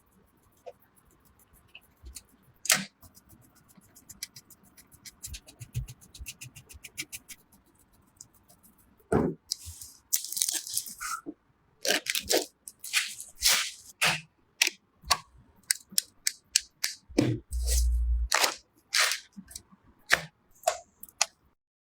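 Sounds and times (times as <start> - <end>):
low hum: 17.1 - 18.3.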